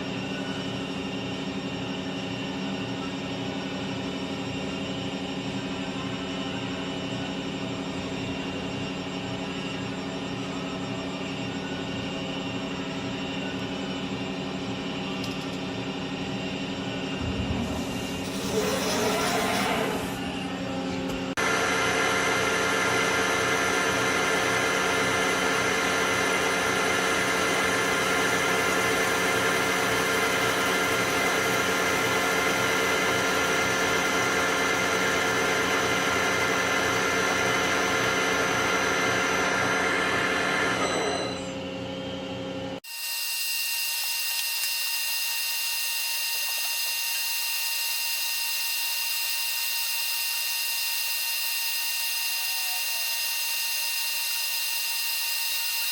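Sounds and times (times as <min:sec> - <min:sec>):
steady high whine: 0:00.0 - 0:42.8
machine motor whining: 0:12.2 - 0:55.9.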